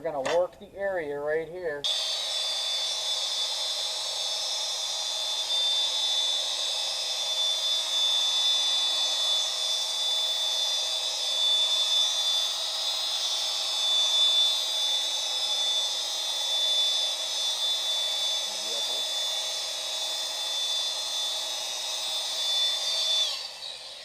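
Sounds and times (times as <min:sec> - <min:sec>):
stone polisher motor whine: 0:01.8 - 0:24.0.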